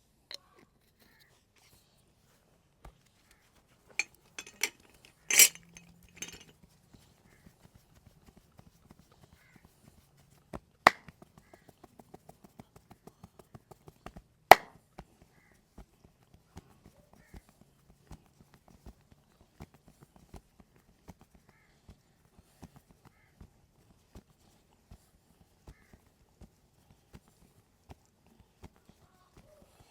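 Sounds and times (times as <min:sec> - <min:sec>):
hands tapping on head: 0:10.9 - 0:11.5.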